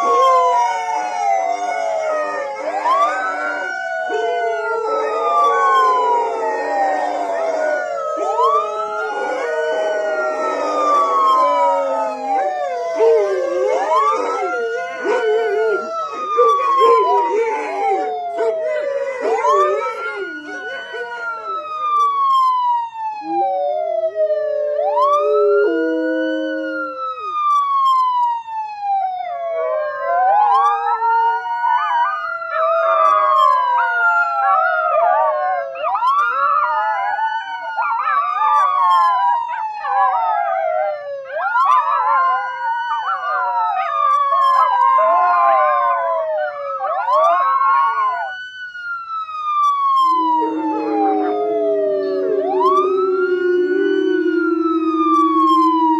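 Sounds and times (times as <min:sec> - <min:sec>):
dogs howling: 0:00.0 - 0:22.2, 0:23.2 - 0:27.4, 0:29.4 - 0:48.4, 0:50.0 - 0:55.9
siren wailing: 0:00.0 - 0:55.9.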